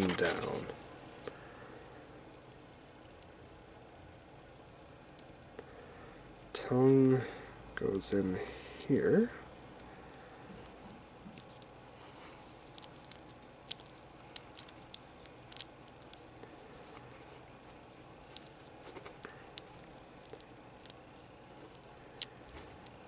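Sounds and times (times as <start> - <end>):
plastic parts clicking and tapping: 12.4 - 23.0.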